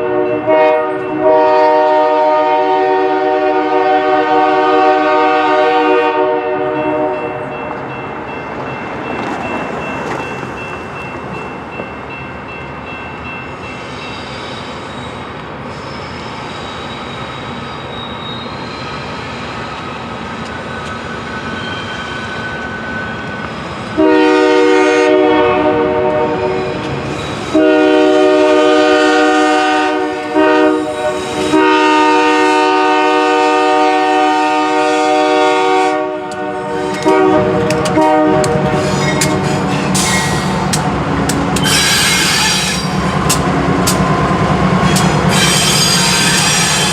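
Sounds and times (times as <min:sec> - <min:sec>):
train air horn blasts: 0:00.0 - 0:07.5, 0:23.9 - 0:26.8, 0:27.4 - 0:40.6, 0:41.6 - 0:43.0, 0:44.9 - 0:46.9
rumble of approaching train: 0:00.0 - 0:46.9.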